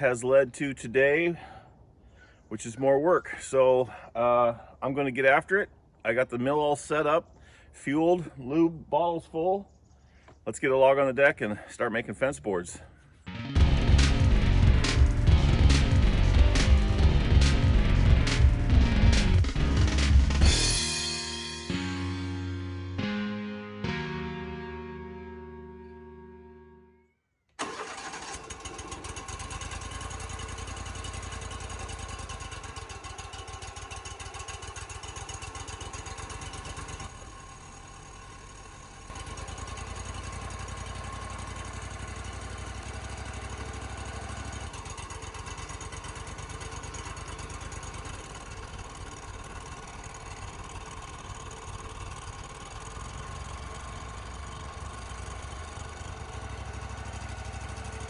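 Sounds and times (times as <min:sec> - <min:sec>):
engine running: 0:13.3 - 0:26.8, 0:27.6 - 0:58.0.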